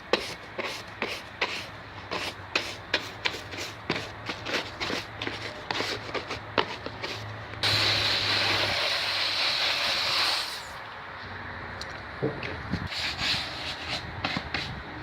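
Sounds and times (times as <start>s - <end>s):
pressurised gas hissing: 7.6s - 10.8s.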